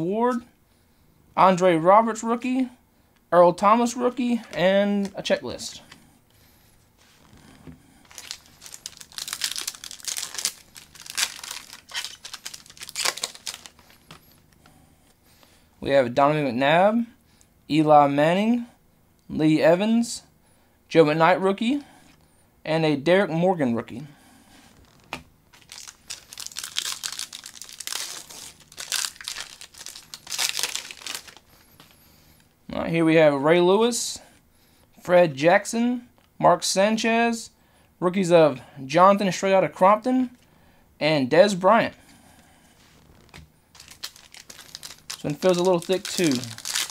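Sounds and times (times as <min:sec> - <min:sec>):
wrapper crinkling and tearing: 0:08.1 - 0:14.2, 0:24.8 - 0:31.6, 0:43.1 - 0:46.9.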